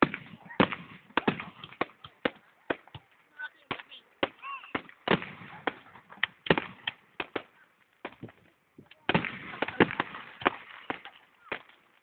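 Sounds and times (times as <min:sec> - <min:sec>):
fireworks crackling: 0:00.0 - 0:12.0
fireworks exploding: 0:00.0 - 0:12.0.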